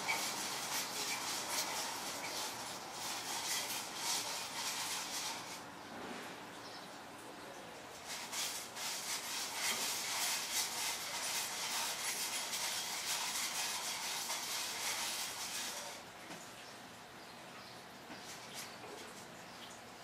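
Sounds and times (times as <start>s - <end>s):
scratchy rubbing and hissing: 0.0s - 5.7s, 7.9s - 16.0s.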